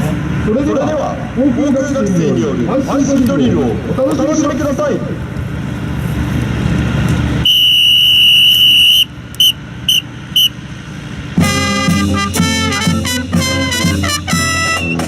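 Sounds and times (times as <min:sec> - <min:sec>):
whistle blasts: 0:07.4 - 0:10.6, 0:14.4 - 0:15.0
brass band playing: 0:11.4 - 0:15.0.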